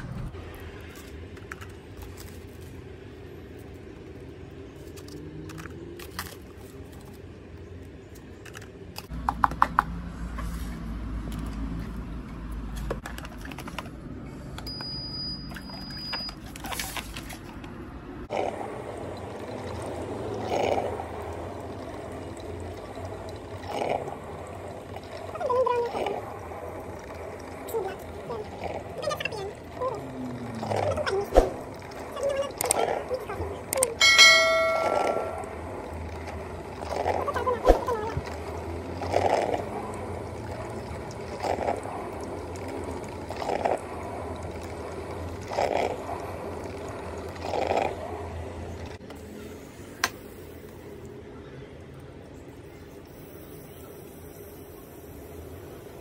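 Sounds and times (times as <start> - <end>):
coffee maker humming and hissing: 0.0 - 56.0
coffee maker gurgling spurts: 18.2 - 34.0, 35.4 - 51.1.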